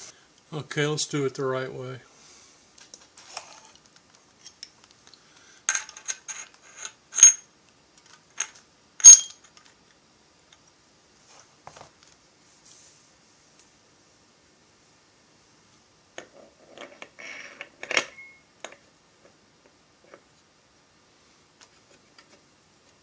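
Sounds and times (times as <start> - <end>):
small metal parts clinking: 5.7 - 9.7.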